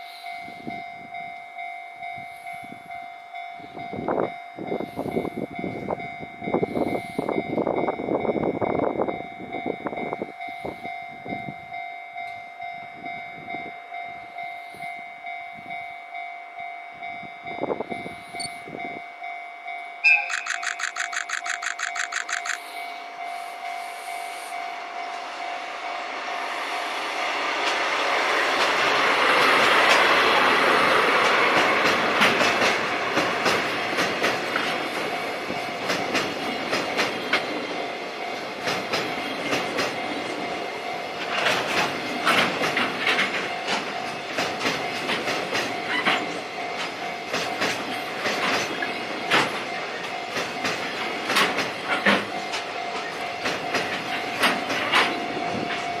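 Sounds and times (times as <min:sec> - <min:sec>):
diesel locomotive passing: 0:00.0 - 0:56.0
level crossing alarm tone: 0:15.1 - 0:26.2
freight wagons clattering over rails: 0:41.2 - 0:56.0.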